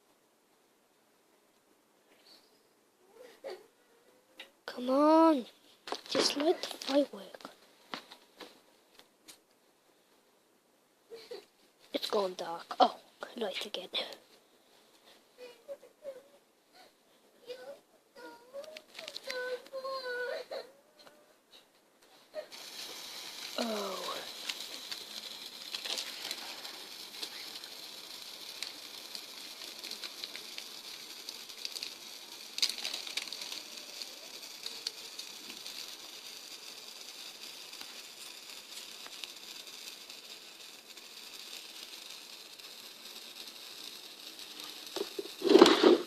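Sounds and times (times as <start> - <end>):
firework hissing and crackling: 4.7 - 8.1, 11.1 - 14.2, 17.4 - 20.6, 22.1 - 46.0
firework pops: 22.5 - 46.0.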